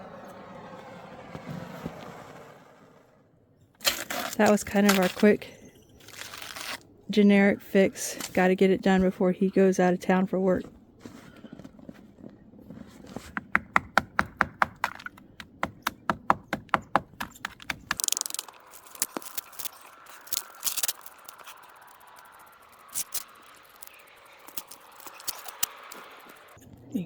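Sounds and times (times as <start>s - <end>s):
scrapes clicks and rustles: 17.2s - 26.7s.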